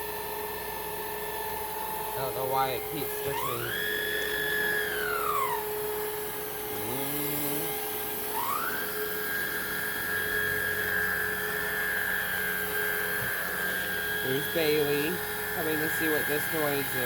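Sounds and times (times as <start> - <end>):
vacuum motor whining: 0.0 - 17.0.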